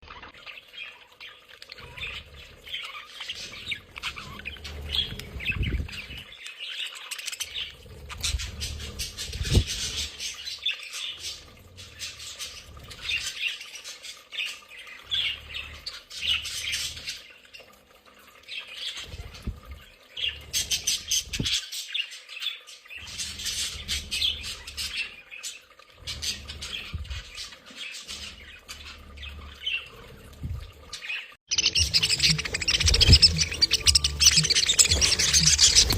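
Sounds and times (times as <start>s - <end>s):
budgerigars chirping and chattering: 0.1s - 17.7s, 18.5s - 35.9s.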